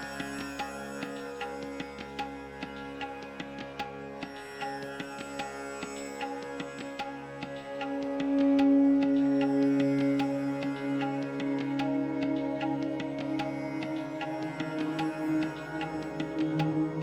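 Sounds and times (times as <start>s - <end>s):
held drone: 5.9s - 17.0s
plucked strings: 8.0s - 17.0s.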